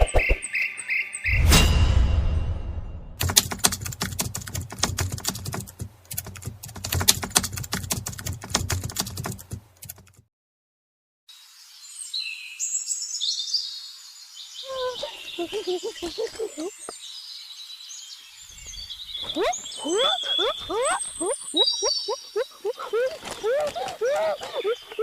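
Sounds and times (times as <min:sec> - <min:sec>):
birds chirping: 0:14.4 - 0:25.0.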